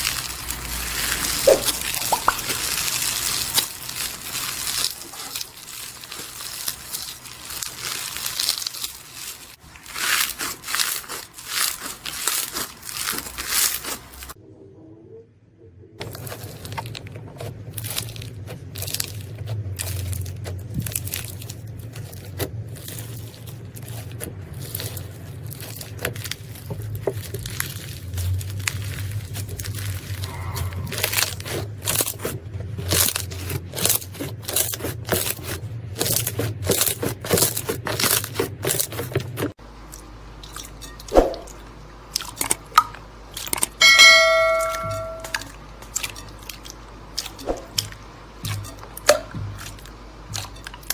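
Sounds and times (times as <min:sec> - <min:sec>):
slime crackling and popping: 0:00.0 - 0:14.4, 0:16.0 - 0:39.4
slime squishing: 0:00.0 - 0:14.4, 0:16.0 - 0:50.9
bell-like ding: 0:43.8 - 0:45.4.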